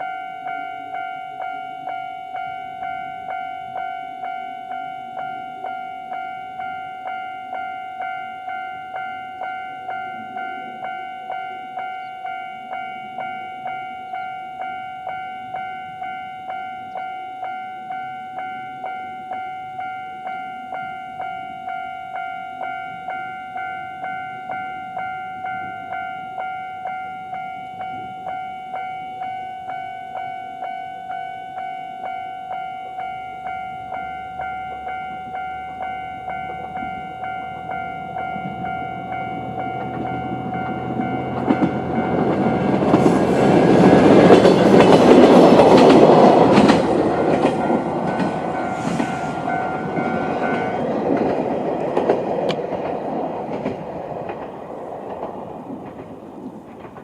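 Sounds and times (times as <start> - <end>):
diesel railcar rumble: 0.0 - 57.0
level crossing warning bell: 0.0 - 57.0
train wheels clacking on rail joints: 37.6 - 57.0.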